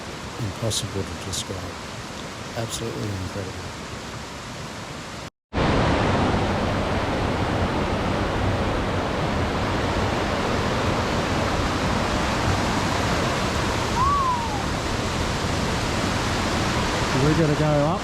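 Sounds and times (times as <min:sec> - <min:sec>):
waterfall roaring: 0:00.0 - 0:18.0.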